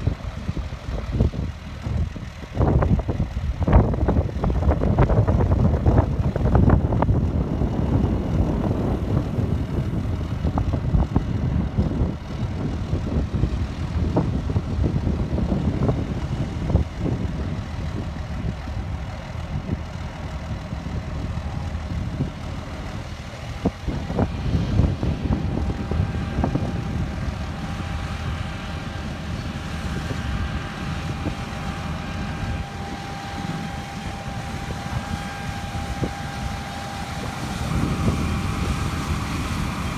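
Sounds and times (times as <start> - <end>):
combine engine rumble: 0.0 - 39.9
steady machine whine: 0.0 - 39.9.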